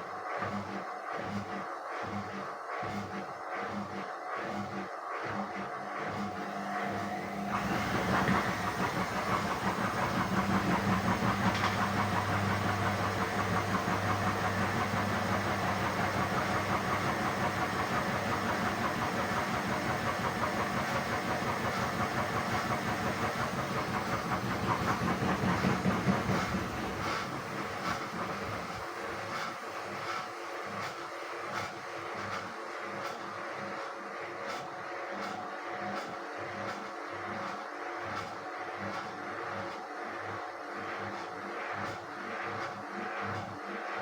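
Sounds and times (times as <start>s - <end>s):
washing machine drum churning: 7.0s - 30.6s.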